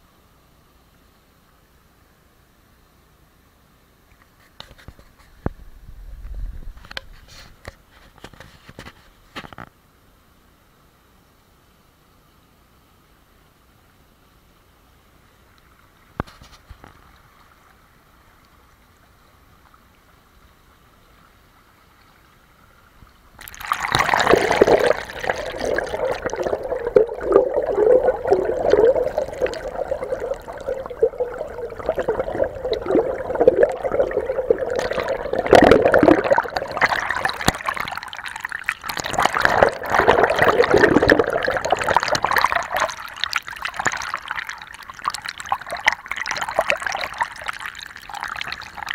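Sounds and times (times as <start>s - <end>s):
water trickling and gurgling: 15.7s - 48.9s.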